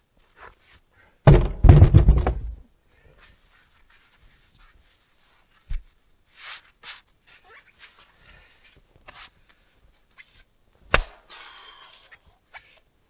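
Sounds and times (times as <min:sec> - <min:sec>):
dull thud: 0:01.3 - 0:02.6
firewood knocking and tumbling: 0:01.3 - 0:02.6.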